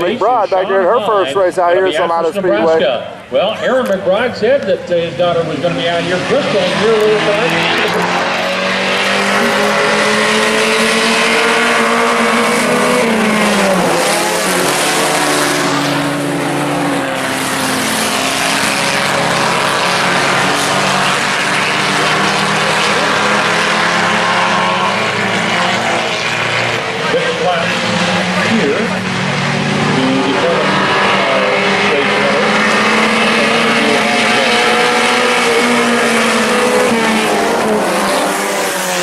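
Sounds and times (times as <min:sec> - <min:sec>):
race car engines at high revs: 0:00.0 - 0:39.0.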